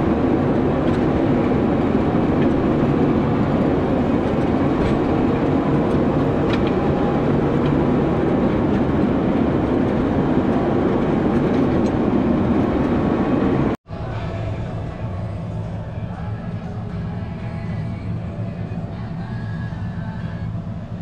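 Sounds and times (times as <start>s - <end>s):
tractor engine running: 0.0s - 21.0s.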